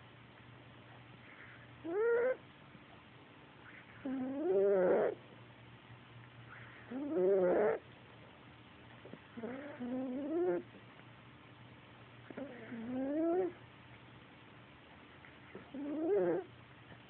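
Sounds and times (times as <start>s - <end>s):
cat snoring: 1.8s - 2.4s, 4.0s - 5.2s, 6.9s - 7.8s, 9.3s - 10.7s, 12.3s - 13.6s, 15.5s - 16.5s.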